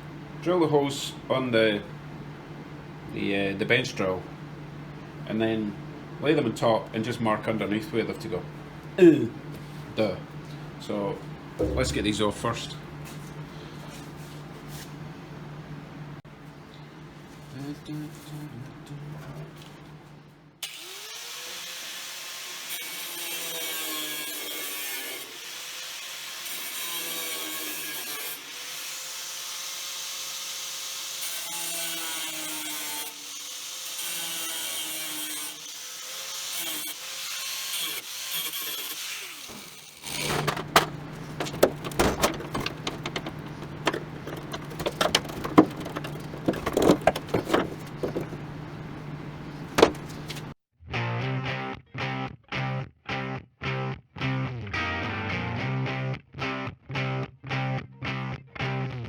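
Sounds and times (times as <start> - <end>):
steady low hum: 8.4 - 17.6, 40.2 - 50.6
sharp knocks and clatter: 11.6 - 12.9, 40.2 - 50.6
power tool motor whirring: 38.5 - 48.6.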